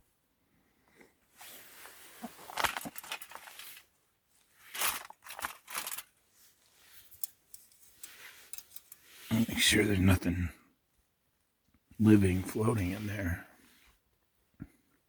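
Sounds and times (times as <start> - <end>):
pouch crinkling: 2.1 - 3.8, 4.6 - 6.2.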